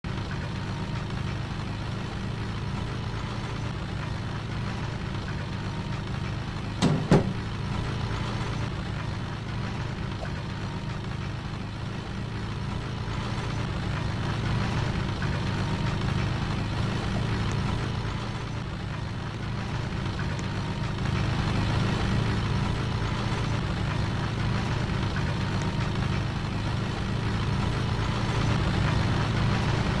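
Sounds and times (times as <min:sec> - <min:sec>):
sharp double knock: 0:06.8 - 0:07.4.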